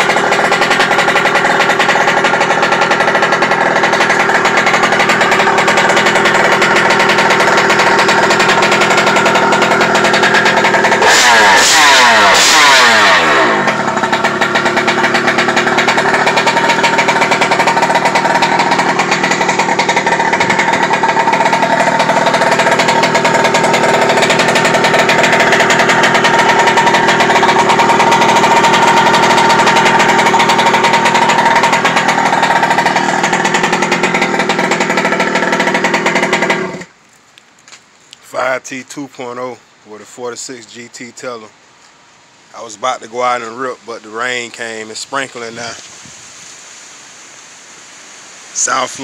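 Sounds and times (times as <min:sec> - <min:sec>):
two-stroke engine idling buzzily: 0:00.0 - 0:37.0, 0:42.4 - 0:47.3, 0:48.5 - 0:49.0.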